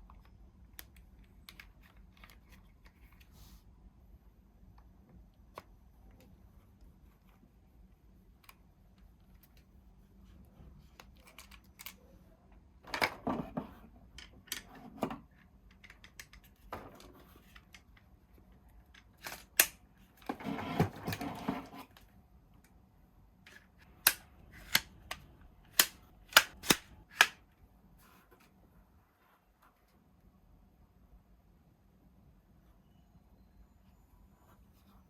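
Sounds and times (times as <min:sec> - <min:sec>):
sharp plastic clicks: 0:23.8 - 0:27.4
loud plastic snaps: 0:23.9 - 0:27.4.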